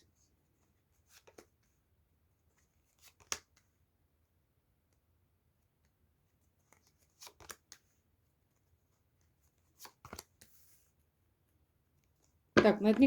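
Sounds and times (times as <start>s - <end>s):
cards being shuffled: 2.9s - 3.6s, 6.7s - 7.8s, 9.7s - 10.6s.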